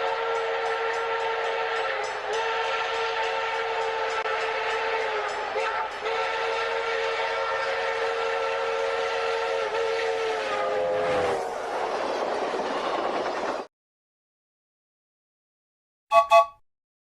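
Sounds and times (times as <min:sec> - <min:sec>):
train whistle blast: 0:00.0 - 0:11.4, 0:16.1 - 0:16.6.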